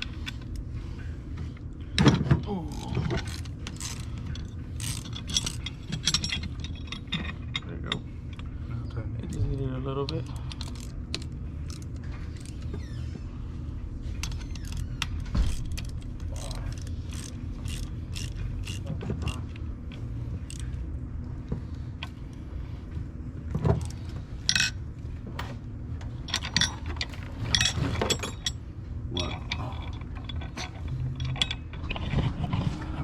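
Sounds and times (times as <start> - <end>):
steady low hum: 0.0 - 33.0
hand tools clinking and ratcheting: 2.0 - 8.0, 10.1 - 12.6, 14.2 - 19.6, 23.7 - 24.8, 26.2 - 32.7.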